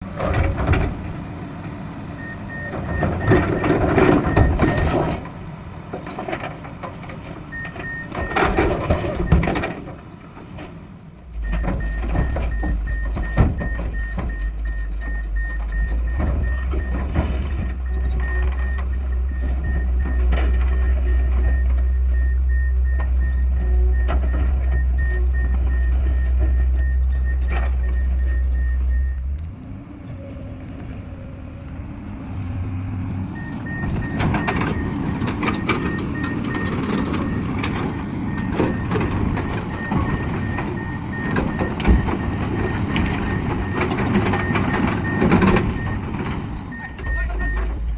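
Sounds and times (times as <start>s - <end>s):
construction machine working: 0.0s - 47.9s
deep rumble: 11.3s - 47.9s
machine knocks and clanks: 11.4s - 21.9s, 33.6s - 46.5s
warning alarm beeping: 11.4s - 29.3s, 33.4s - 47.9s.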